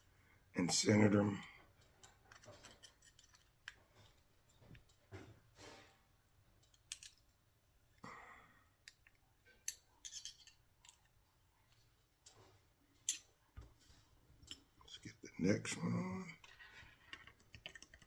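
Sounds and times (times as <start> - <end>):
small tools clicking and tapping: 1.8 - 5.2, 6.6 - 7.3, 8.8 - 12.4, 16.4 - 18.0.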